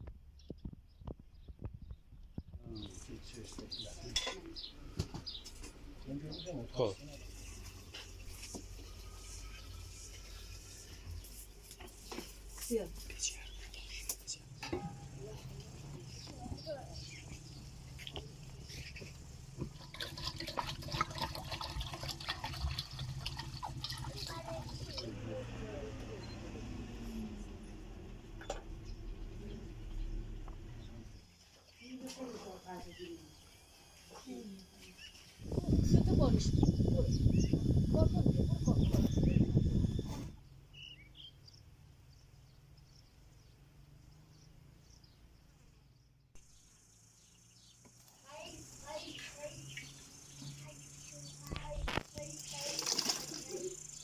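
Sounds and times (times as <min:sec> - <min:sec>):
water splashing and dripping: 0:19.6 - 0:25.2, 0:52.2 - 0:53.8
low hum: 0:22.8 - 0:31.3
steady low hum: 0:22.9 - 0:43.6.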